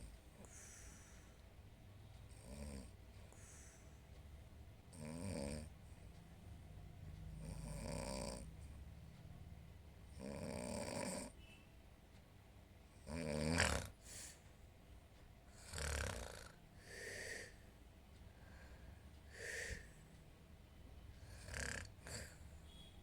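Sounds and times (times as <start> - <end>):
woman snoring: 2.3 - 3.6, 4.9 - 5.7, 7.4 - 8.5, 10.1 - 11.4, 13.0 - 14.0, 15.5 - 17.6, 19.3 - 19.9, 21.2 - 22.9.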